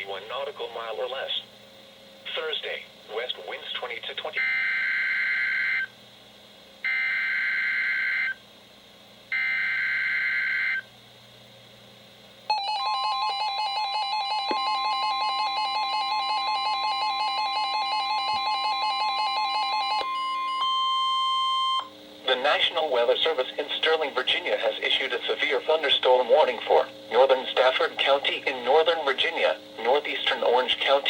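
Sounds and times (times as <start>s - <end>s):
rapid beeping alarms: 4.4s - 5.9s, 6.9s - 8.4s, 9.3s - 10.9s, 12.5s - 21.9s
steady warning alarm tone: 4.4s - 6.0s, 6.8s - 8.4s, 9.3s - 10.9s, 12.5s - 24.7s.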